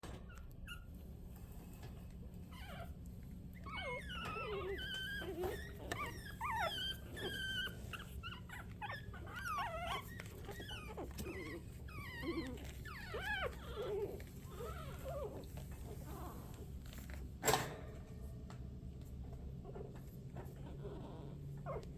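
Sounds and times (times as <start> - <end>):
puppies whimpering and squeaking: 0.1 - 17.2, 19.6 - 21.9.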